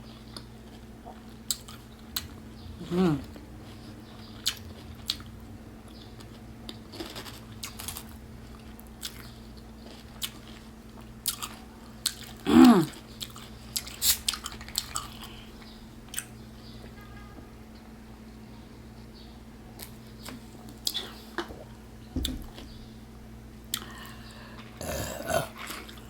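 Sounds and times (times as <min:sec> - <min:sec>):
crunchy chewing: 0:00.0 - 0:16.8, 0:23.7 - 0:26.0
short falling vocal sound: 0:02.8 - 0:03.3.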